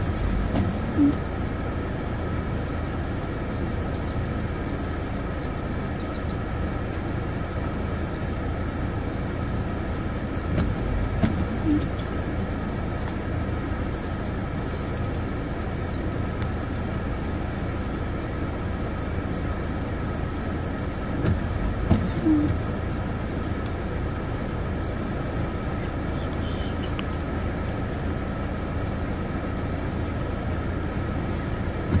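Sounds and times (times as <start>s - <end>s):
low outdoor rumble: 0.0s - 32.0s
soft thumps: 0.2s - 1.2s, 10.5s - 11.9s, 21.2s - 22.6s
high falling chirp: 14.7s - 15.1s.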